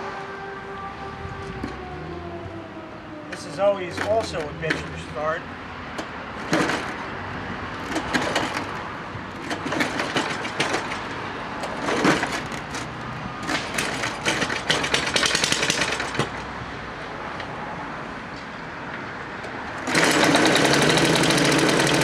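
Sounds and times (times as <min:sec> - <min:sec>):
engine pull-start: 0:19.8 - 0:22.0
small gas engine running unevenly: 0:19.8 - 0:22.0.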